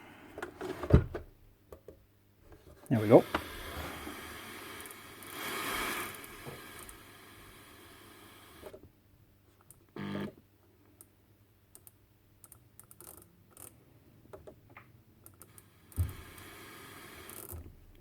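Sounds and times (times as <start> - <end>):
low steady hiss: 0.0 - 12.8, 13.4 - 18.0.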